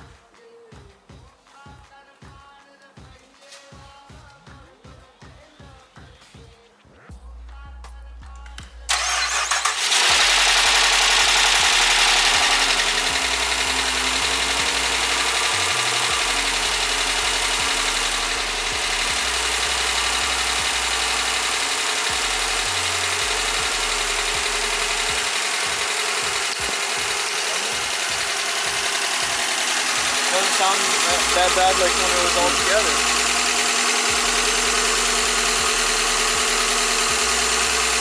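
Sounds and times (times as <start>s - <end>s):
car engine starting and idling: 8.9s - 38.0s.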